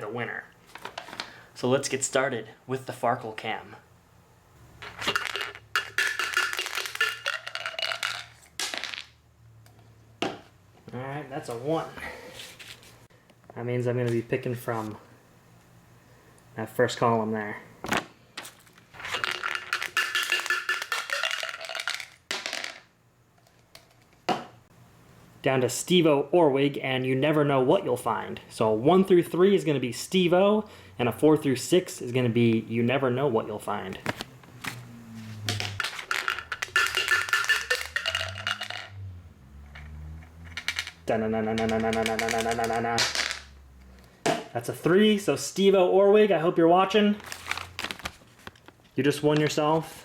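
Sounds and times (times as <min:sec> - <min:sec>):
dice clattering: 0:04.8 - 0:09.2, 0:19.0 - 0:22.9, 0:35.4 - 0:39.0, 0:40.5 - 0:43.6.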